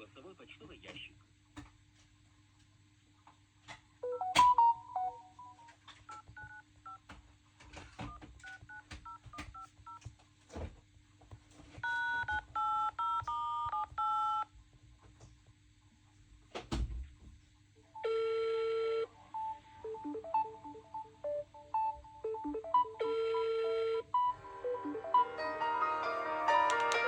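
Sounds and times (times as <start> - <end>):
touch-tone keypad beeps: 4.0 - 6.6, 19.4 - 25.0.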